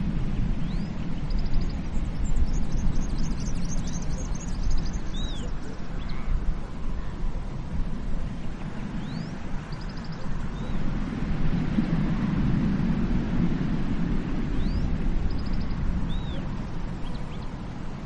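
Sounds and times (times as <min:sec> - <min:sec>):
ocean waves on beach: 0:00.0 - 0:18.0
small birds chirping: 0:00.6 - 0:07.2, 0:08.4 - 0:10.9, 0:14.5 - 0:17.6.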